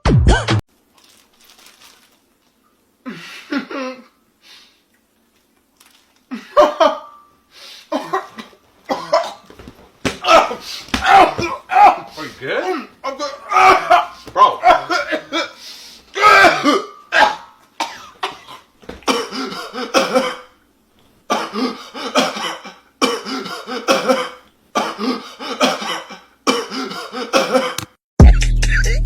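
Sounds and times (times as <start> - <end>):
person coughing hard: 6.3 - 7.2, 7.9 - 9.5, 10.2 - 15.6, 16.2 - 20.5, 21.3 - 28.0
hip hop music: 28.2 - 29.0.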